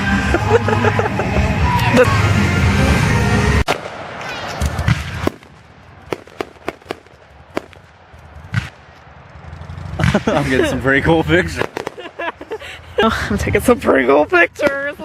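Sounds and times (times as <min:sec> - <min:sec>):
distant fireworks bangs: 0:03.7 - 0:09.1, 0:11.6 - 0:12.2.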